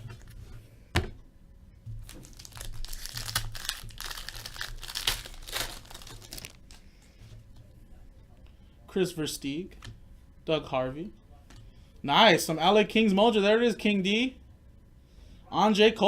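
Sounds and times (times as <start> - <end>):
foil wrapper crinkling: 2.0 - 6.9.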